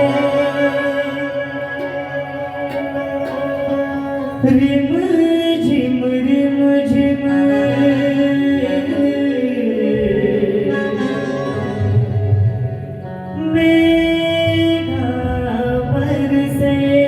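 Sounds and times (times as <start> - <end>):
devotional music instruments: 0.0 - 17.0
person singing: 0.0 - 17.0.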